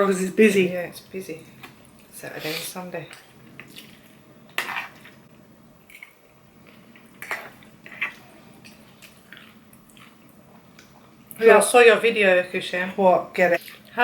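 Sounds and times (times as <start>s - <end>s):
wet chewing and mouth smacks: 5.9s - 11.4s.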